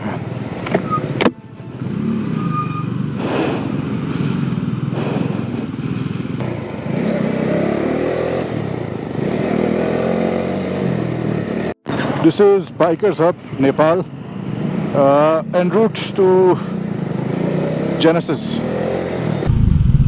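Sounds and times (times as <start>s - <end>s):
road noise: 0.0s - 20.0s
motorcycle engine running: 3.7s - 11.8s.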